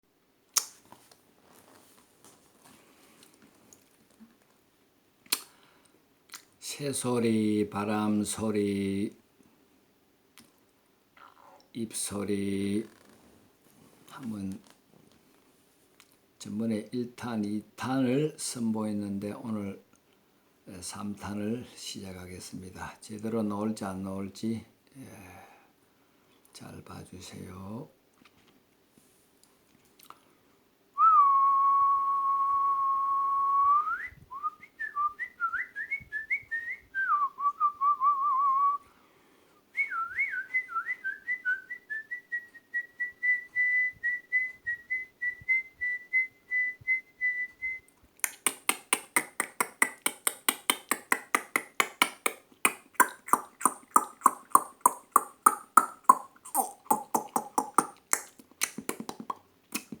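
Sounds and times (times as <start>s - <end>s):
rapid mouth clicks: 0.6s - 0.8s, 5.3s - 5.6s, 48.2s - 60.0s
person whistling birdsong imitation: 31.0s - 38.8s, 52.7s - 59.1s.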